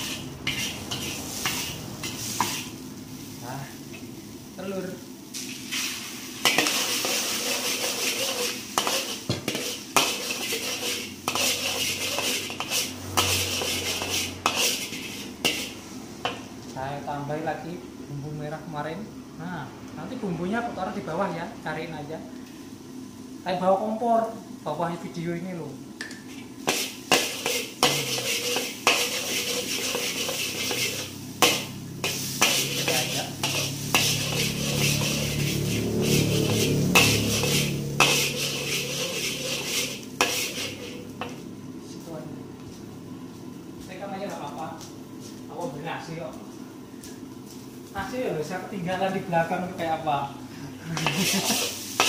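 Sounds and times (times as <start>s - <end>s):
metal spatula scraping a pan: 0.0s - 2.8s, 5.6s - 16.4s, 26.3s - 41.4s, 51.0s - 52.0s
food sizzling: 0.0s - 19.2s, 20.1s - 52.0s.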